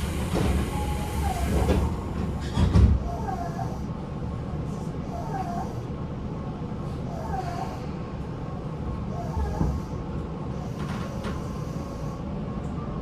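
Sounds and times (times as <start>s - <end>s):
air hiss of train doors: 0.0s - 3.0s
train doors shutting thud: 0.0s - 3.2s
air conditioning running: 0.0s - 13.0s.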